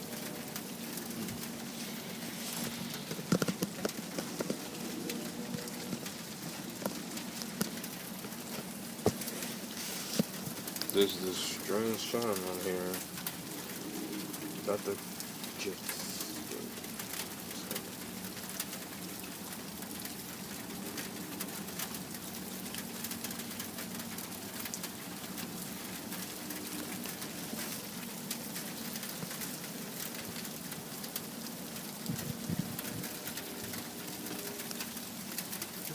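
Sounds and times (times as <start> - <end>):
rain-like patter: 0.0 - 35.9.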